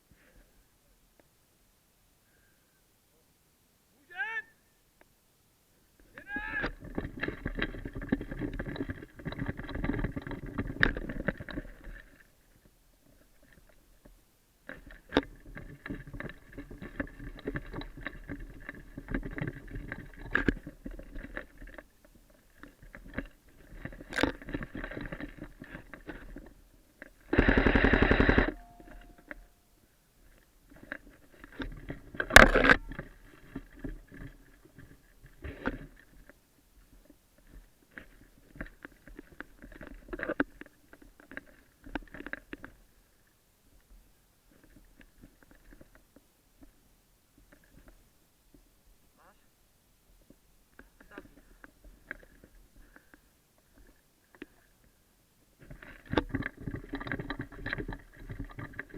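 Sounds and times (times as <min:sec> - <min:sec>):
rustling noise: 0:06.0 - 0:49.0, 0:50.1 - 0:58.9.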